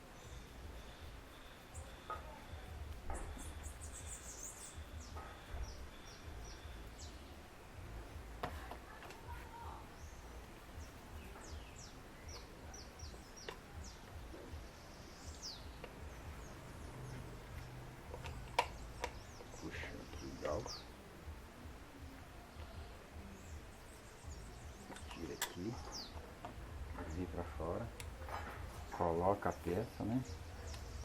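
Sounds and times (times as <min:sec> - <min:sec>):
small birds chirping: 0:00.0 - 0:31.0
steady low rumble: 0:02.5 - 0:08.4, 0:09.8 - 0:31.0.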